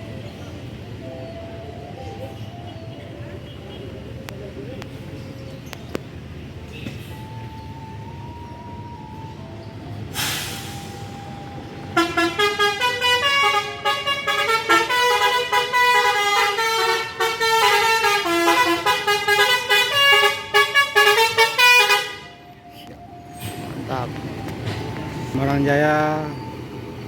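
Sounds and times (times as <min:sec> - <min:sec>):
bus horn playing quick tune: 0:11.9 - 0:22.4.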